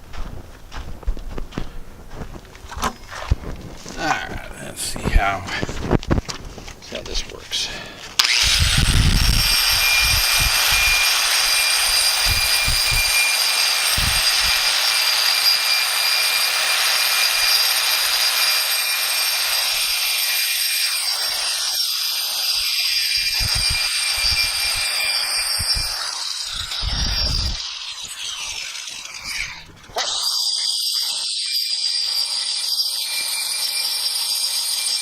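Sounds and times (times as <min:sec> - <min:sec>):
power tool whining and cutting: 0:07.6 - 0:35.0.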